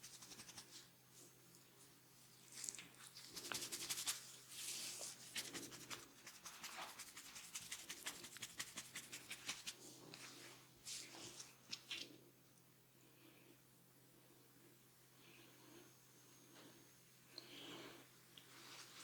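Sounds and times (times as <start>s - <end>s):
fingers scratching through hair: 0.0s - 0.9s, 2.6s - 9.8s.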